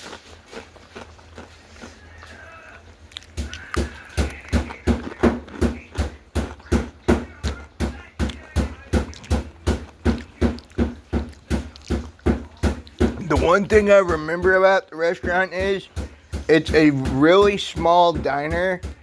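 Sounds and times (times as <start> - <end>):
chewing: 0.0 - 13.1.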